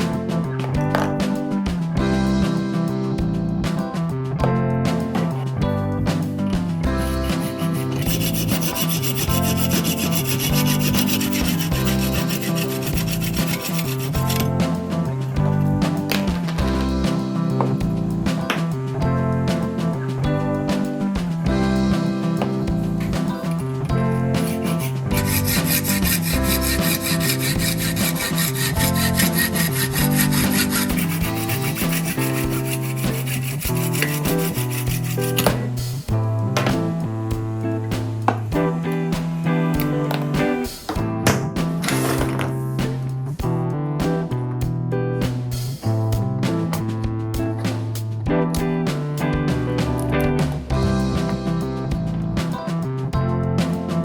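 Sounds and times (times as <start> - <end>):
background music: 0.0 - 54.0
rhythmic rubbing strokes: 6.1 - 18.9, 22.2 - 37.0.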